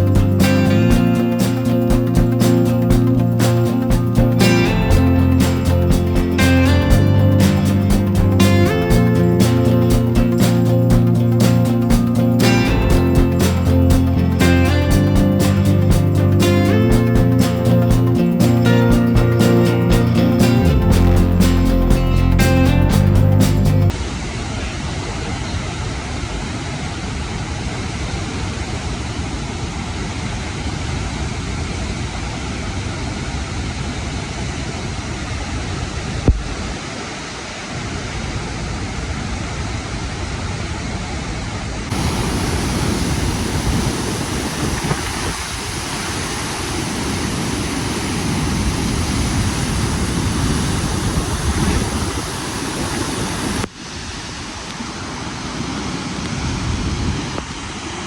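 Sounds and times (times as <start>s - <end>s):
river water rushing: 0.0s - 23.8s, 41.9s - 58.0s
wind on microphone: 41.9s - 54.4s, 55.4s - 57.6s.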